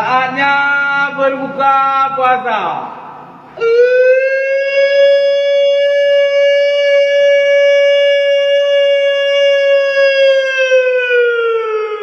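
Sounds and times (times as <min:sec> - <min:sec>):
siren steady tone: 0:03.6 - 0:12.0.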